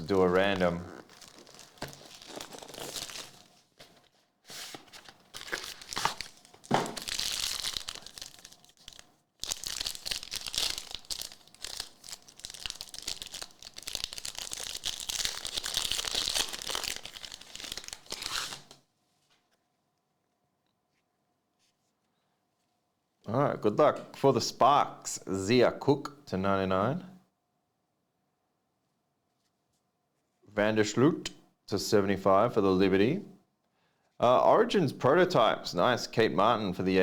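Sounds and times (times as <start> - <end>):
plastic wrapping being torn and crinkled: 0.0 - 18.8.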